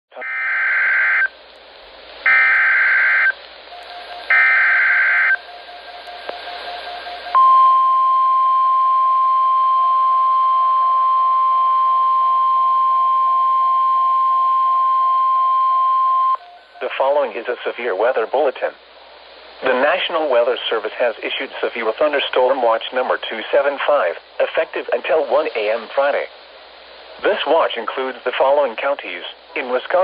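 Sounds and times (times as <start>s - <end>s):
radio hiss: 0.1s - 7.4s, 10.2s - 30.0s
steady alarm tone: 0.2s - 1.3s, 2.3s - 16.9s.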